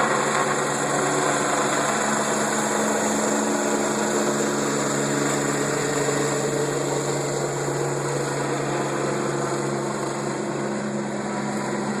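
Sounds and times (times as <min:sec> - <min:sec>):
helicopter running: 0:00.0 - 0:12.0.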